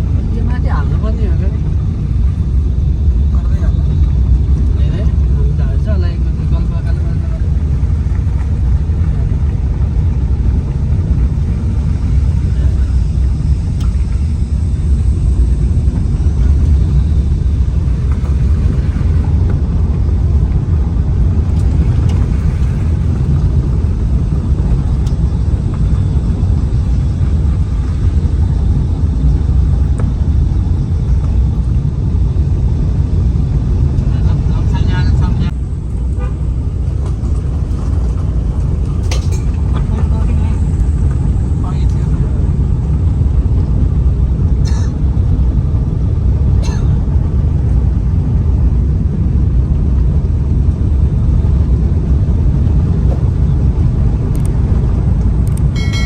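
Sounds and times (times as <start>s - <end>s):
vehicle on rough road rumbling: 0.0s - 56.0s.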